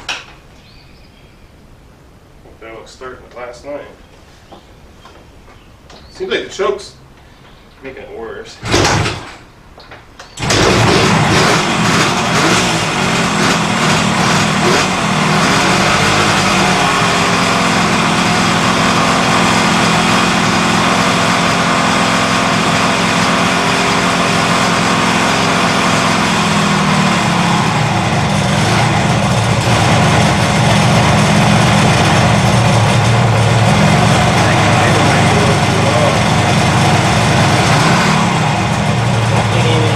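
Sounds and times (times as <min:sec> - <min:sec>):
two-stroke engine running: 0:10.4 - 0:39.9.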